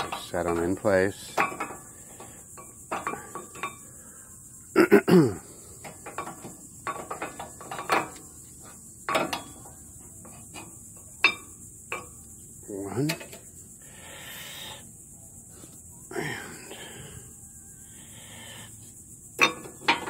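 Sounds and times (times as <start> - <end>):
metal brake pads clinking: 0.0 - 3.9, 5.8 - 8.4, 9.0 - 12.3, 19.4 - 20.0.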